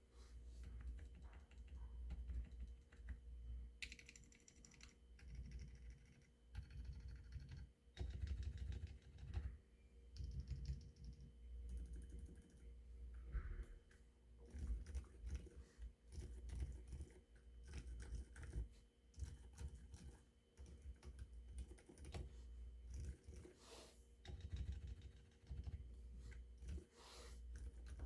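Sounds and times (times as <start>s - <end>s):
mechanical keyboard typing: 0.8s - 3.2s, 3.8s - 9.5s, 10.2s - 12.6s, 14.5s - 18.6s, 19.2s - 22.3s, 22.9s - 23.5s, 24.2s - 25.8s.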